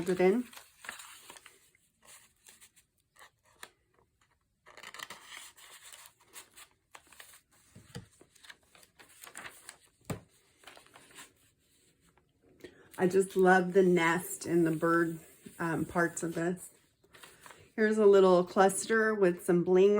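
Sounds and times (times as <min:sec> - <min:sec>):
paper pages rustling: 0:00.0 - 0:12.3, 0:14.5 - 0:17.8.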